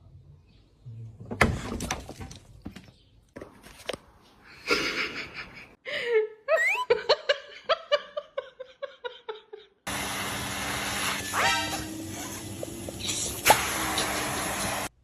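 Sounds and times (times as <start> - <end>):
person laughing hard: 4.6 - 9.8.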